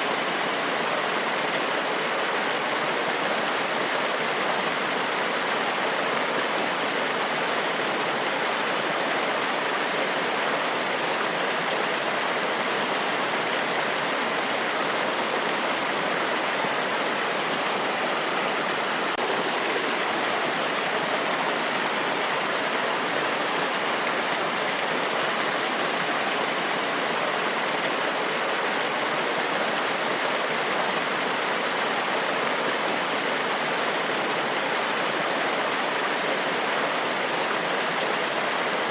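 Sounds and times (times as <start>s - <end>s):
waterfall rushing: 13.2s - 26.4s.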